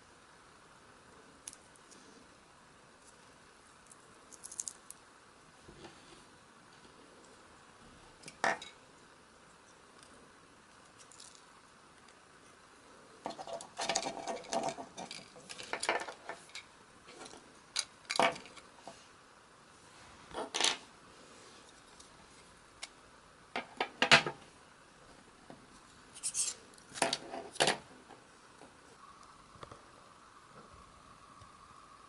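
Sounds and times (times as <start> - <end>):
small plastic parts clicking: 3.8 - 5.0, 13.2 - 18.7.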